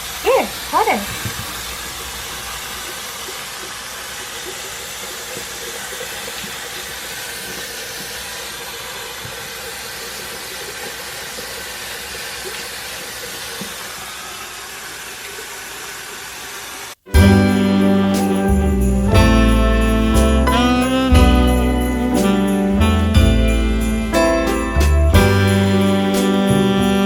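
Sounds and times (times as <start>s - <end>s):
tap water running into sink: 0.0s - 17.0s.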